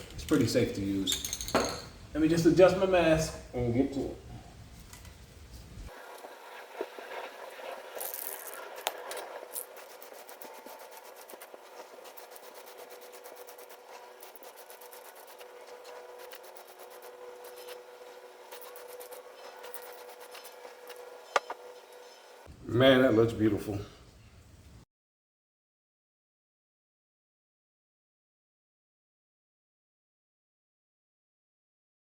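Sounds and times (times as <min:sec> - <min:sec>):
steady hum: 0:03.4 - 0:22.8
aerosol can spraying: 0:06.1 - 0:21.1.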